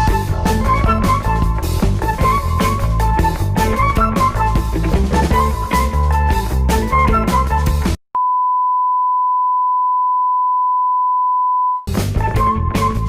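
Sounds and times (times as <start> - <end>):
guitar and drums music: 0.0 - 8.0, 11.9 - 13.0.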